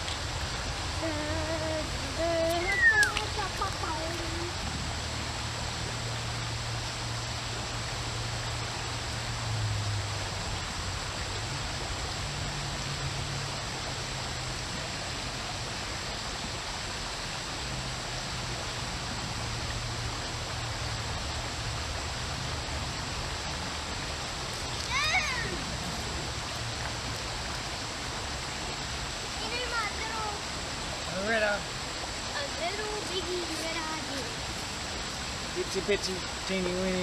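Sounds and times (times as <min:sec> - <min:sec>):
creek water running over rocks: 0:00.0 - 0:37.0
low steady hum: 0:00.0 - 0:37.0.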